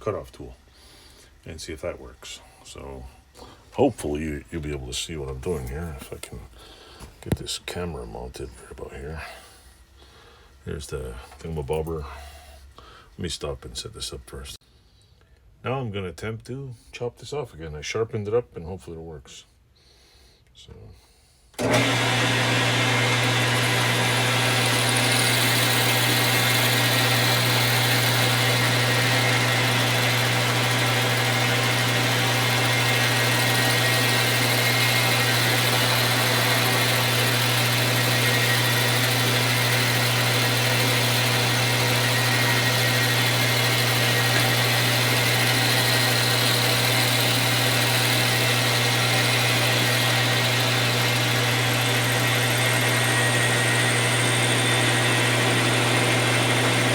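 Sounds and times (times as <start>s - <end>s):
metal lathe motor humming: 21.6s - 56.9s.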